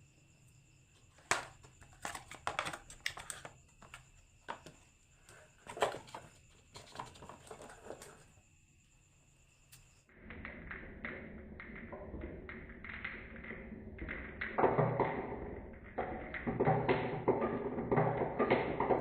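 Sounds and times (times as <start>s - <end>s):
marbles clacking down wooden run: 11.7s - 19.0s.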